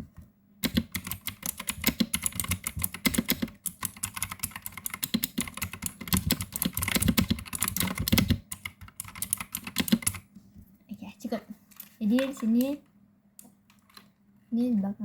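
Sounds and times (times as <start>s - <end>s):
fast typing on mechanical keyboard: 0.6s - 10.2s.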